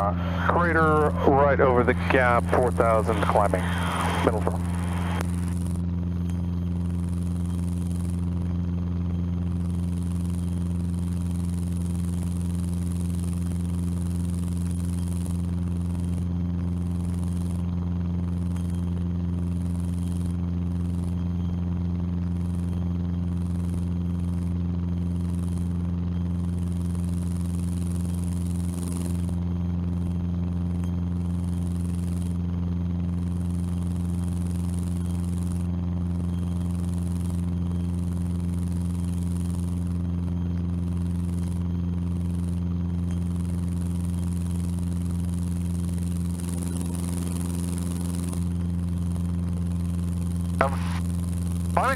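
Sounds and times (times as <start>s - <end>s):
light aircraft engine droning: 0.0s - 11.6s.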